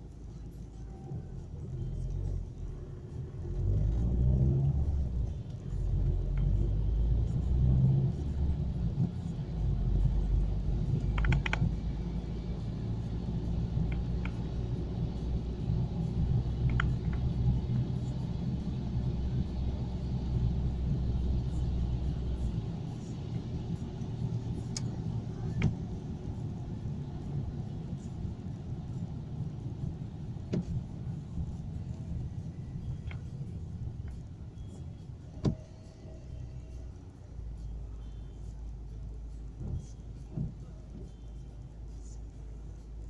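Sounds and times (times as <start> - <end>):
car engine and road rumble: 0.0 - 43.0
faint clicks: 10.8 - 12.0, 16.6 - 17.4.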